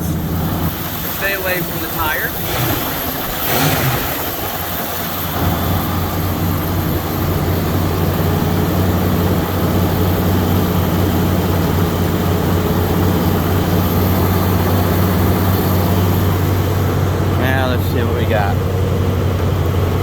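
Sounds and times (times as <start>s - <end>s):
car engine idling: 0.0s - 20.0s.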